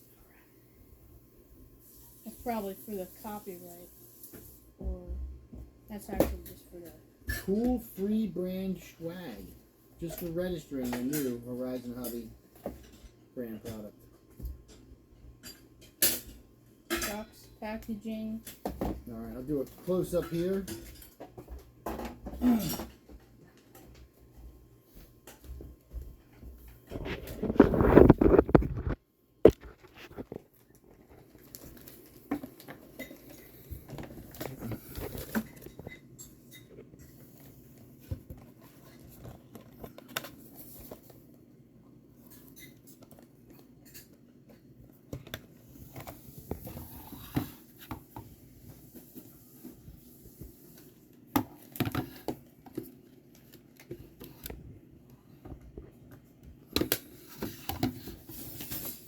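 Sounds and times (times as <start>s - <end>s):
packaging rustling and crinkling: 26.9s - 35.9s.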